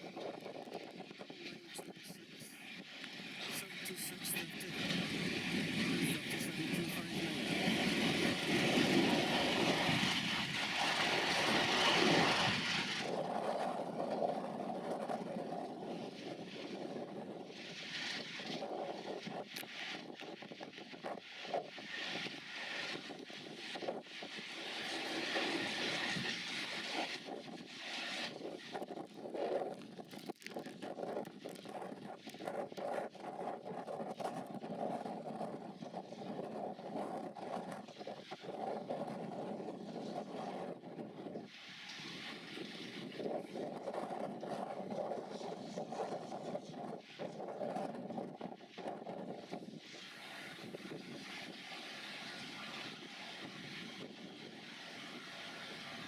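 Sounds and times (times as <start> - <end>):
diesel locomotives running past: 3.0 - 12.7.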